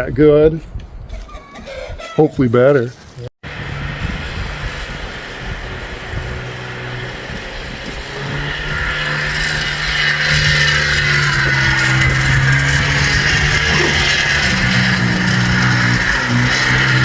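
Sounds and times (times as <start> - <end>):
two-stroke engine running: 3.4 - 17.0.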